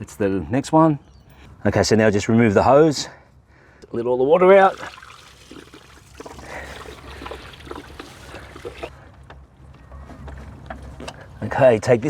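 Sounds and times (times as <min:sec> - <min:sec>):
water trickling and splashing: 0:04.6 - 0:08.9.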